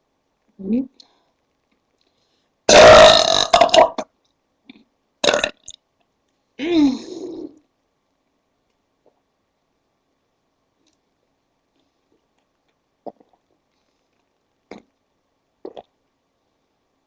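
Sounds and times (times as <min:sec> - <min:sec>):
mouth clicks and throat gulps: 0:12.7 - 0:13.8, 0:14.7 - 0:15.0, 0:15.6 - 0:16.0.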